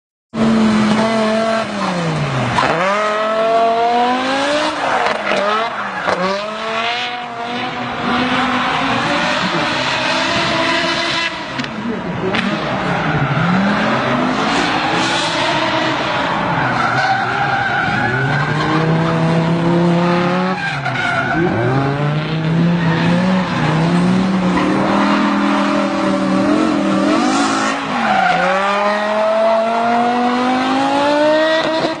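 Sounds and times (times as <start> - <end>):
car engine accelerating hard: 21.3 - 32.0.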